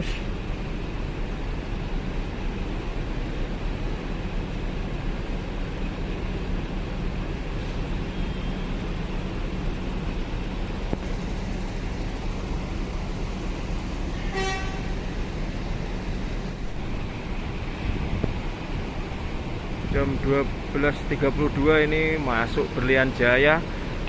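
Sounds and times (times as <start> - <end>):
bus engine running: 0.0 - 24.0
bus horn toot: 14.1 - 15.1.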